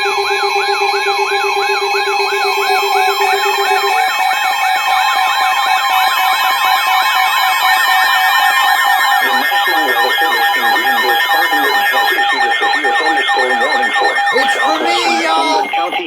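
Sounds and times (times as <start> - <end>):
steady alarm tones: 2.4 - 16.0
fast yelping siren: 9.2 - 16.0.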